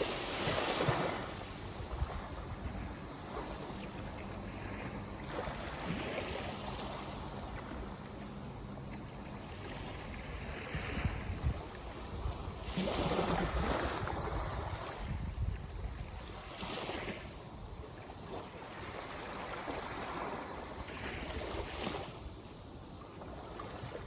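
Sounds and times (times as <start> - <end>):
wind buffeting microphone: 0.0 - 5.0, 10.3 - 16.4
sea waves washing on shore: 0.0 - 22.3.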